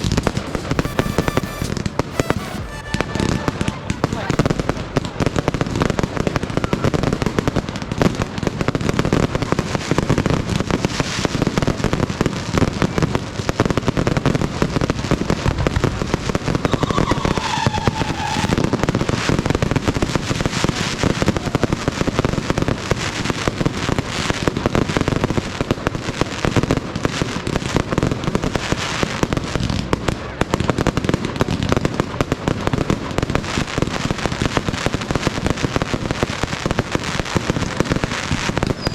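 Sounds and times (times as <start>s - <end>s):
fireworks crackling and banging: 0.0s - 38.9s
falling tone: 0.3s - 7.5s, 14.0s - 21.4s.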